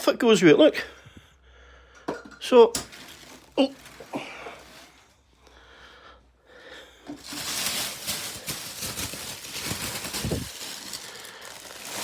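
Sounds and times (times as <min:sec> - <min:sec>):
plastic packaging crinkling: 0:02.8 - 0:05.1, 0:07.1 - 0:12.0.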